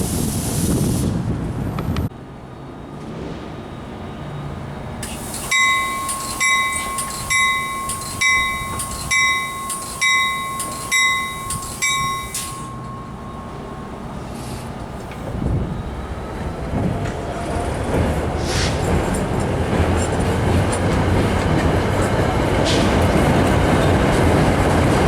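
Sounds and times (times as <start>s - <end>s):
passing train rumble: 0.0s - 25.0s
train bell ringing: 5.0s - 15.2s.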